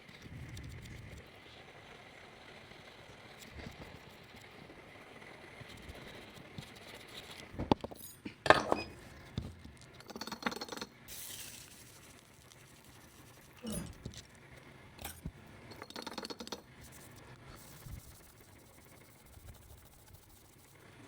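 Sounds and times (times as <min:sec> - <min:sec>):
tools and small parts clinking: 0:07.7 - 0:11.6, 0:15.0 - 0:16.6.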